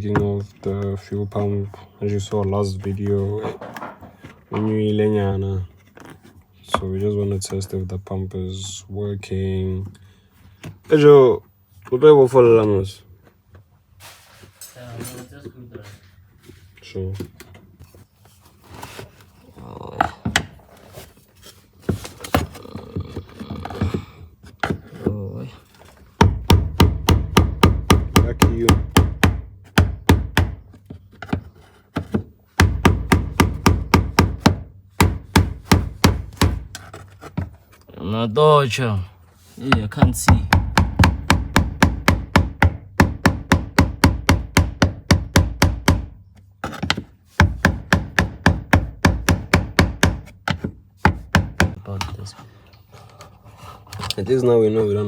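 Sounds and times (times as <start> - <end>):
metal scraping: 14.0 - 16.1
hand tools knocking on car parts: 26.1 - 37.5, 39.6 - 51.8.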